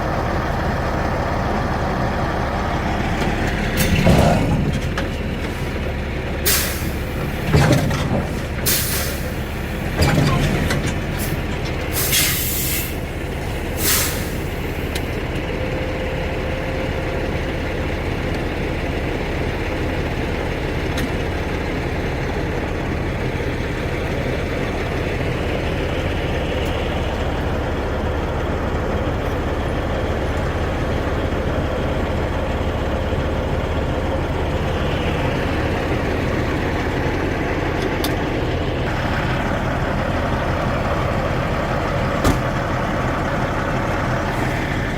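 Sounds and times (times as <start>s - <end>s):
diesel truck engine running: 0.0s - 44.9s
air release hisses: 12.0s - 13.0s, 13.8s - 14.6s.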